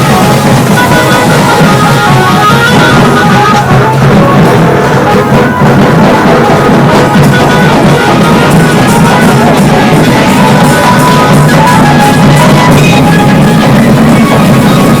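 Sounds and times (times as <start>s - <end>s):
drum band playing: 0.0s - 15.0s
steady melody line: 0.0s - 15.0s.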